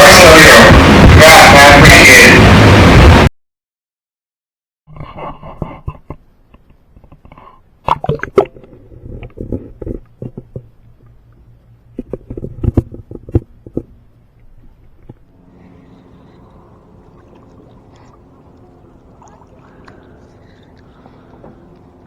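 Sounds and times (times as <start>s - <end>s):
handling clicks and knocks in boat: 8.6s - 15.3s, 16.0s - 22.0s.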